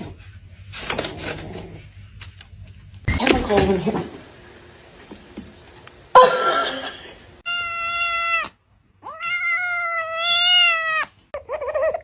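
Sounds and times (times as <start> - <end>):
cat yowling: 7.4 - 11.2.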